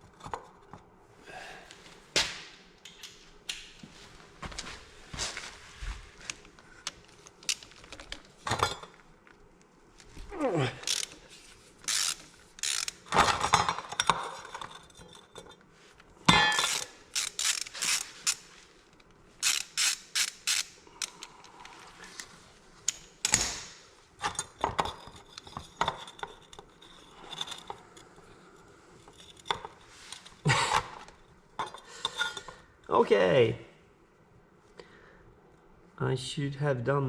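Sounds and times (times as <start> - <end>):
ratchet wrench clicking: 10.8 - 11.2, 11.8 - 13.2, 16.5 - 18.4, 19.4 - 21.3.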